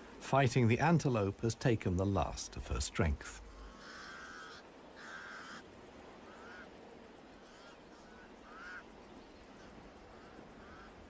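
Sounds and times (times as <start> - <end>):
crows cawing: 3.4 - 6.8, 7.4 - 11.0.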